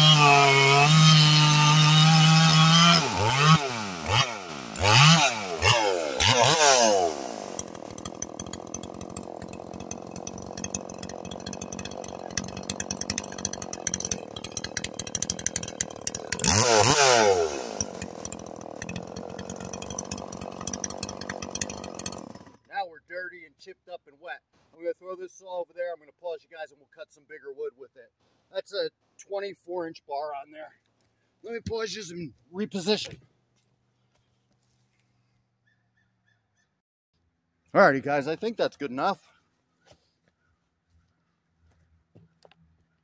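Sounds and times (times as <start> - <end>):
chainsaw revving and idling: 0.0 - 22.7.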